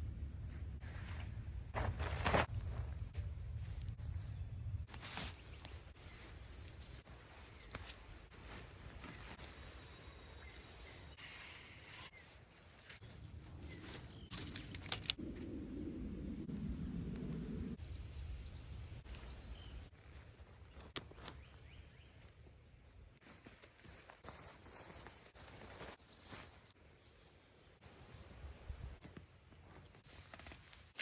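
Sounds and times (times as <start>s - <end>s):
rustling: 0.8s - 4.0s, 23.2s - 26.8s, 28.0s - 31.0s
metallic clicks and jangles: 11.0s - 12.2s, 14.0s - 15.2s
low rushing noise: 15.2s - 17.8s.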